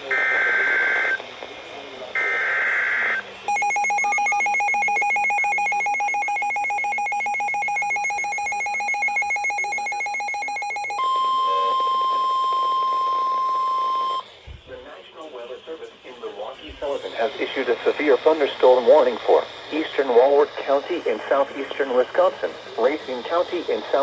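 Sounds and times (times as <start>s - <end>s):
steady warning alarm tone: 0.0s - 1.2s, 2.2s - 14.3s
two-tone attention signal: 2.2s - 14.3s.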